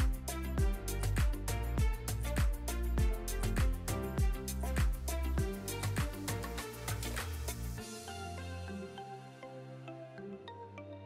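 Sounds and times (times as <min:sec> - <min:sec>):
steady drum beat: 0:00.0 - 0:07.8.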